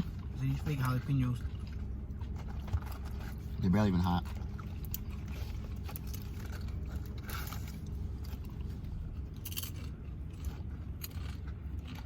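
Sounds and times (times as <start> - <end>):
steady low hum: 0.0 - 12.0
crunchy chewing of chips: 1.4 - 12.0.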